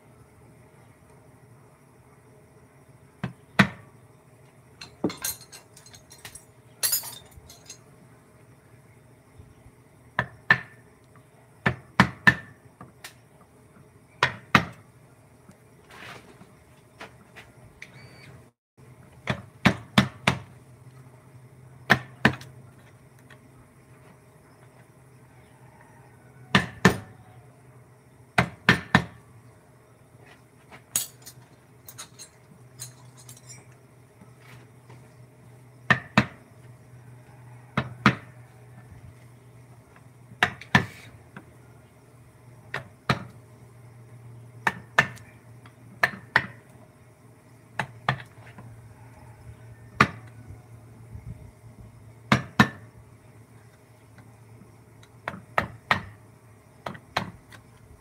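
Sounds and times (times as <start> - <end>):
low steady hum: 0.0 - 10.2.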